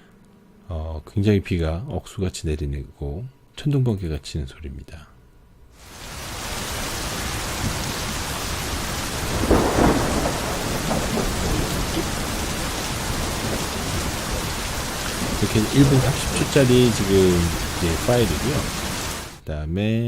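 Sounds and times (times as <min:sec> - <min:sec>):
heavy pouring rain: 0:05.8 - 0:19.4
thunder clap: 0:05.9 - 0:19.4.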